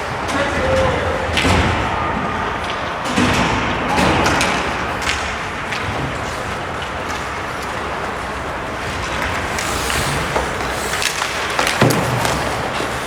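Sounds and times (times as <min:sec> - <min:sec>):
arena crowd hubbub: 0:00.0 - 0:13.0
hockey knocks against boards: 0:03.0 - 0:13.0.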